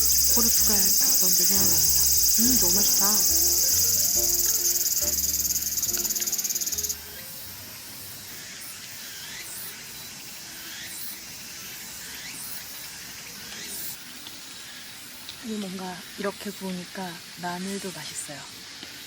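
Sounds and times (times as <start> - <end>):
soft background music: 0.0 - 8.2
faint insect chirps: 0.0 - 19.0
insect chorus trilling: 0.0 - 19.0.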